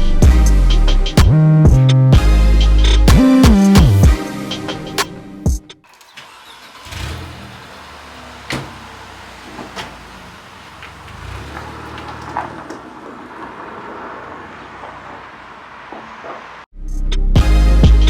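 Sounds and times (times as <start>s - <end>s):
knocks and clunks: 7.1s - 16.7s.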